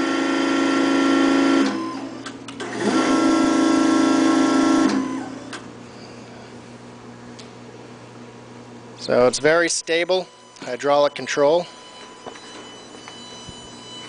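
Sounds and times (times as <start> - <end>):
hydraulic pump whining: 0.0 - 6.5, 9.6 - 14.0.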